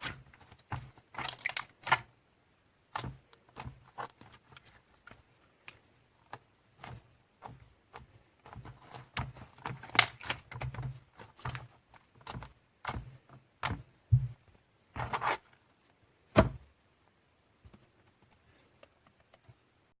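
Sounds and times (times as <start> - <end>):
hands squishing slime: 0.0 - 2.1, 2.8 - 13.9.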